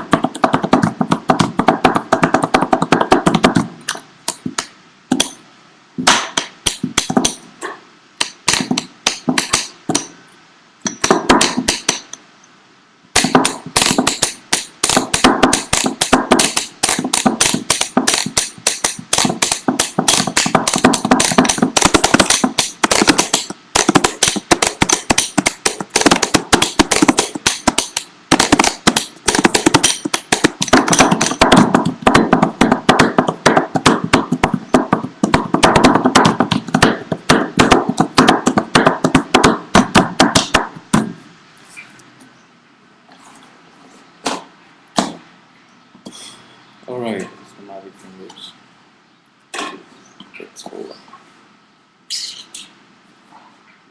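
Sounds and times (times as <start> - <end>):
hands drumming on a desk: 0.0 - 3.7, 6.4 - 7.4, 13.2 - 41.2.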